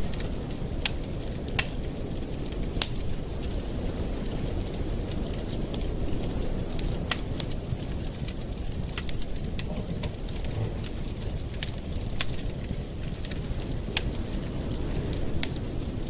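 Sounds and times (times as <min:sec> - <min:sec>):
burning wood crackling and popping: 0:00.0 - 0:16.0
fire low rush: 0:06.8 - 0:15.9.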